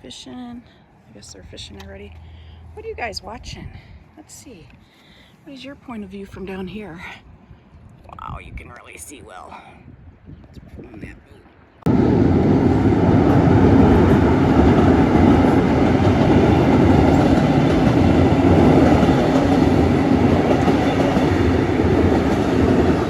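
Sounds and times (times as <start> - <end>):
train wheels rumbling on rails: 11.9 - 23.0.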